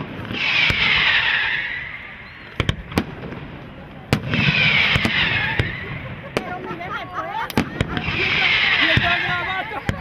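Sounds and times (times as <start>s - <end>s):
firework bangs: 0.0s - 10.0s
loud hissing crackle: 0.0s - 10.0s.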